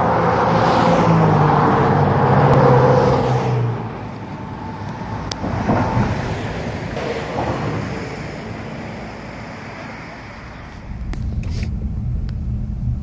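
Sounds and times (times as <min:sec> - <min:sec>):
vehicle passing close by: 0:00.0 - 0:08.7
distant traffic noise: 0:00.0 - 0:12.8
tyre and road noise: 0:00.0 - 0:13.0.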